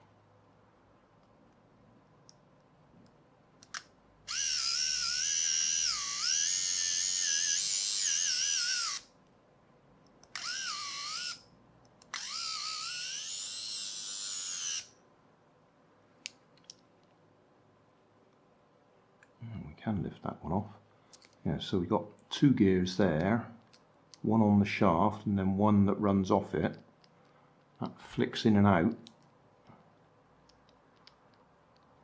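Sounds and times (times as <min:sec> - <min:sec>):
small electric motor whining: 0:04.3 - 0:09.1, 0:10.4 - 0:11.4, 0:12.1 - 0:14.9.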